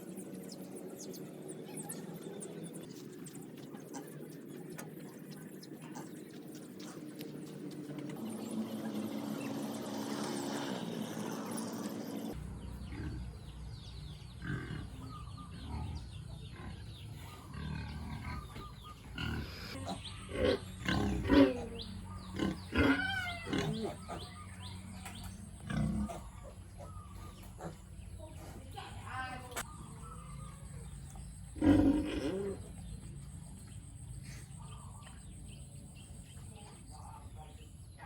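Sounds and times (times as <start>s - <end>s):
pigs grunting and squealing: 14.3s - 28.8s, 29.6s - 33.3s.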